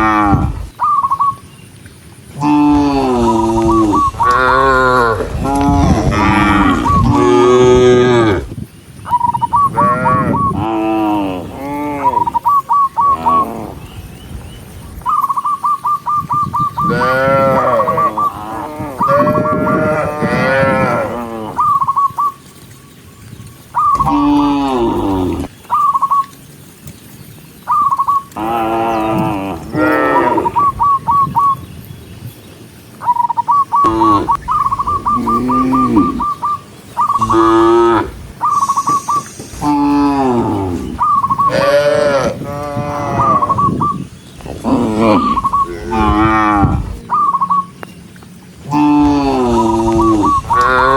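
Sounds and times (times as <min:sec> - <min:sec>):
cattle mooing: 0:00.0 - 0:00.7, 0:02.4 - 0:08.5, 0:16.8 - 0:21.6, 0:24.0 - 0:25.5, 0:28.4 - 0:30.5, 0:35.0 - 0:36.4, 0:37.2 - 0:43.6, 0:44.6 - 0:47.0, 0:48.7 - 0:50.9
high chirping trill: 0:02.4 - 0:07.6, 0:38.4 - 0:39.8.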